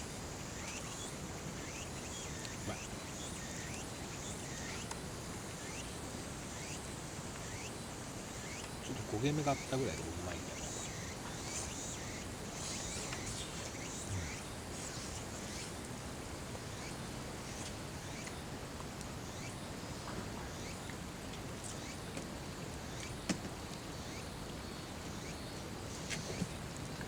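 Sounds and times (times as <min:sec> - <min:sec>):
outdoor background noise: 0:00.0 - 0:27.0
faint insect buzzing: 0:00.1 - 0:15.9, 0:16.7 - 0:18.3, 0:19.2 - 0:20.8.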